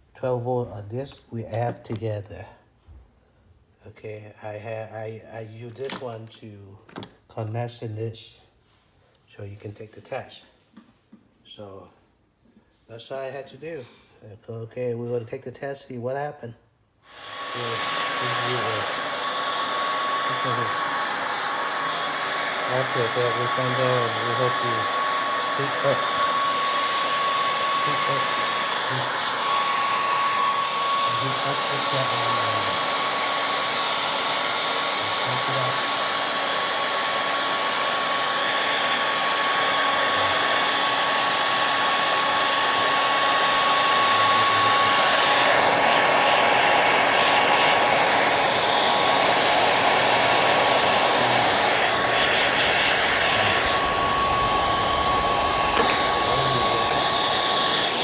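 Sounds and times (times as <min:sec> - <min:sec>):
electric blower motor whirring: 0:17.1 - 0:58.0.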